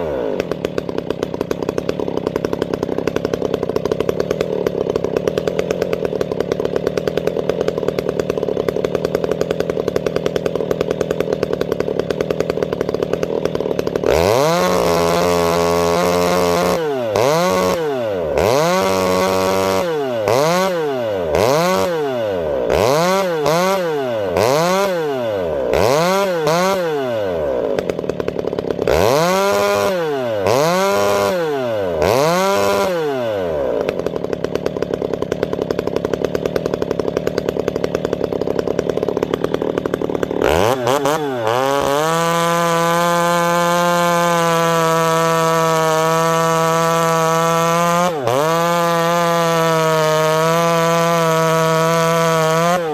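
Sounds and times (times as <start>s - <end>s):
chainsaw revving: 0.0s - 52.9s.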